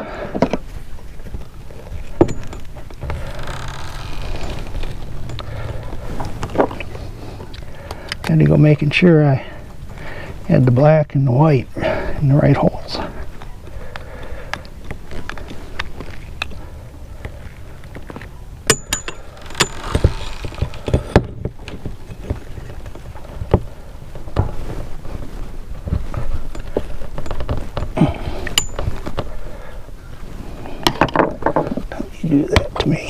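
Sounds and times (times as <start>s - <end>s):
steady low hiss: 0.0s - 33.0s
hand tools clicking and knocking: 2.1s - 7.0s, 18.0s - 23.7s, 26.0s - 29.4s.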